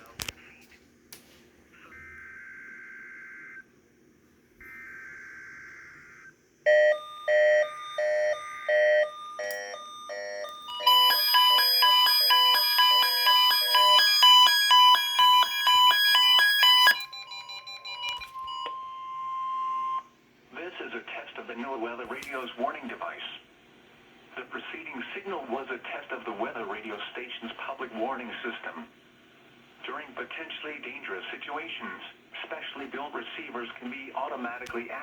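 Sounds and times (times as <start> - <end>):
weather radios beeping: 10.8 - 17.0.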